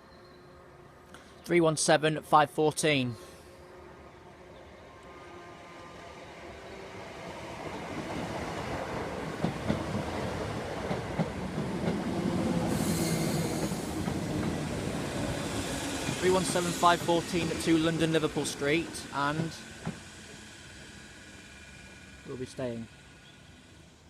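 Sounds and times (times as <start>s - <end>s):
electric train running past: 3.2s - 24.0s
high hiss: 12.5s - 14.4s.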